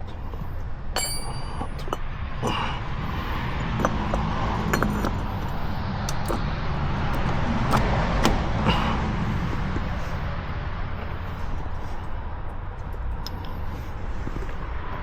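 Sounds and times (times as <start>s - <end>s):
steady low rumble: 0.0s - 15.0s
metal tools clinking: 1.0s - 2.1s, 3.8s - 5.7s.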